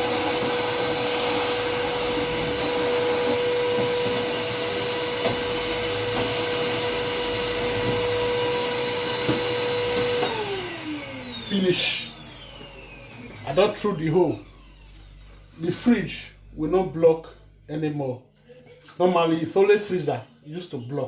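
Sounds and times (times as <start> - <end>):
blower motor whining: 0.0 - 15.2.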